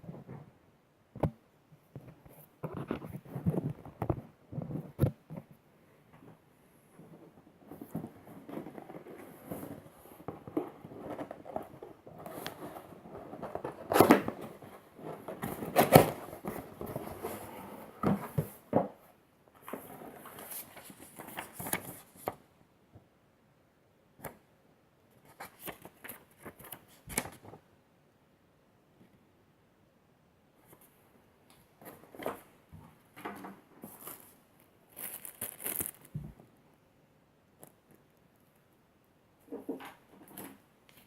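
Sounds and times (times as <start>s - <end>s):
packaging rustling: 34.9s - 36.2s.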